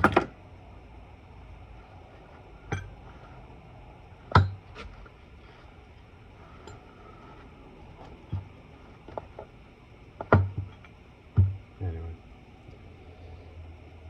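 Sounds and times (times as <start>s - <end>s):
faint metal clinks: 2.6s - 3.4s, 6.4s - 7.4s
hammer knocking on metal: 10.2s - 10.8s, 11.4s - 11.6s.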